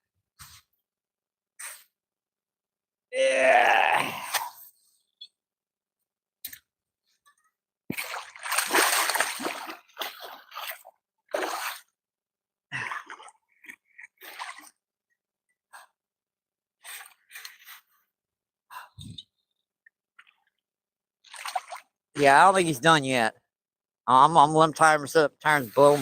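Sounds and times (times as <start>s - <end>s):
fish splashing in shallow water: 7.9s - 12.0s, 21.2s - 21.9s.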